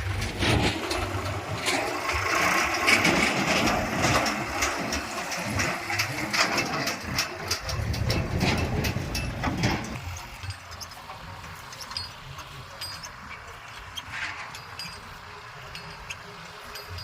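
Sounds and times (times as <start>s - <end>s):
diesel engine running: 0.0s - 17.0s
metallic clanks and rattles: 0.0s - 17.0s.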